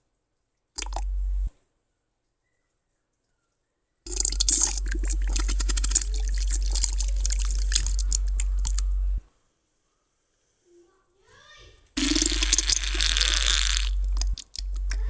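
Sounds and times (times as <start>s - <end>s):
long fart: 4.1s - 9.2s, 12.0s - 15.0s.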